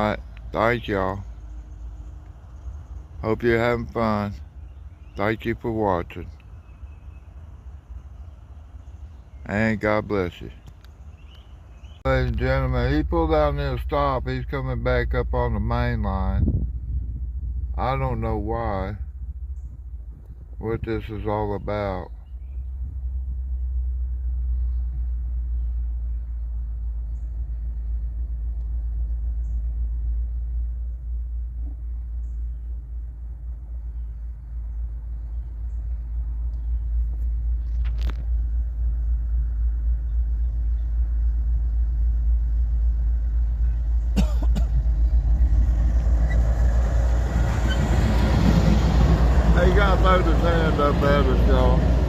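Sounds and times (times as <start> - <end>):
locomotive engine rumbling: 0.0 - 52.0
sharp clicks: 10.6 - 11.5.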